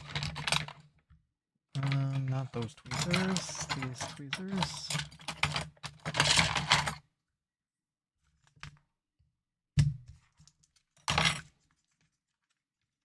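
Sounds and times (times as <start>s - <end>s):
small plastic parts rattling: 1.8s - 6.8s.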